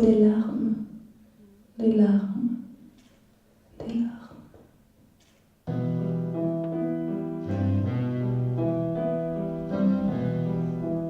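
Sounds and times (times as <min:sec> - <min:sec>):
piano playing slow chords: 0:05.7 - 0:11.0.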